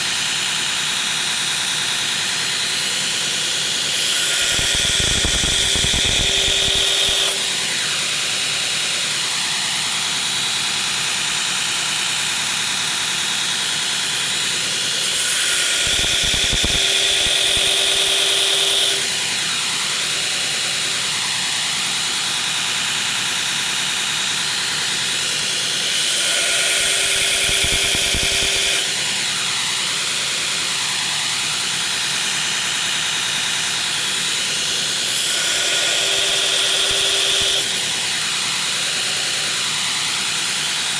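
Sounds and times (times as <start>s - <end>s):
belt grinder grinding steel blade: 2.0s - 9.2s, 13.5s - 22.4s, 24.3s - 40.9s.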